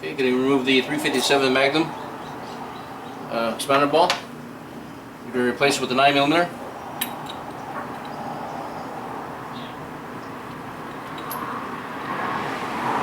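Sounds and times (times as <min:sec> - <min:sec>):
faint small metal parts clicking: 0:10.4 - 0:11.5.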